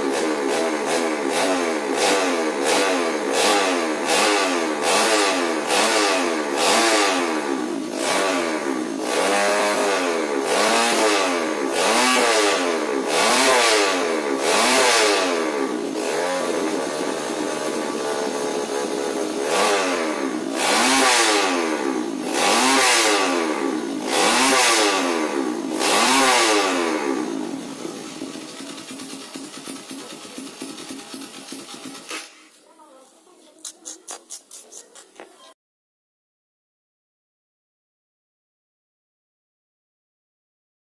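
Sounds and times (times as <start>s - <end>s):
motorcycle engine revving: 0.0s - 32.6s.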